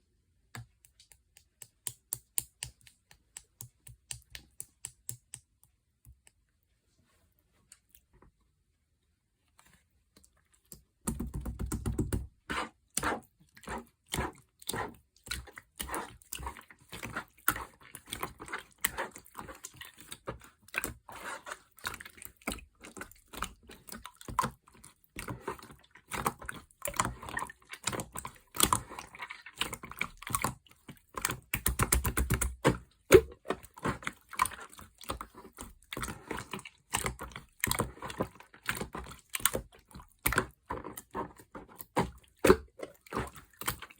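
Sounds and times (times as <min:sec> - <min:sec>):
slime squelching: 0:09.7 - 0:43.9.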